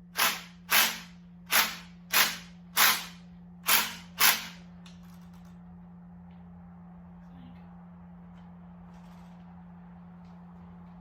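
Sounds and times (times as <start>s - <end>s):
steady low hum: 0.0s - 11.0s
compressed air tool bursts: 0.1s - 4.6s.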